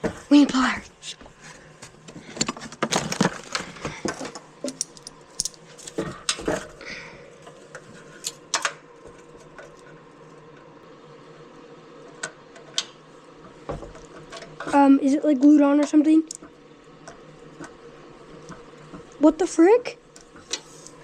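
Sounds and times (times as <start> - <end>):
metal tools clinking: 4.6 - 5.6.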